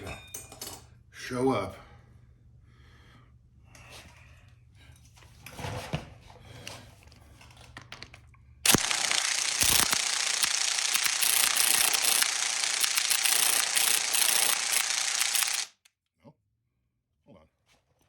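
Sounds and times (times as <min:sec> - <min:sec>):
impact wrench running: 0:08.7 - 0:15.8.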